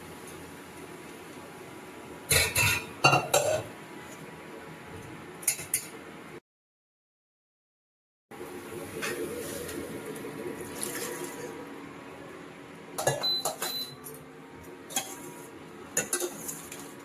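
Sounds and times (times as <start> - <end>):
metal cookware clinking: 2.3 - 3.7, 16.0 - 16.8.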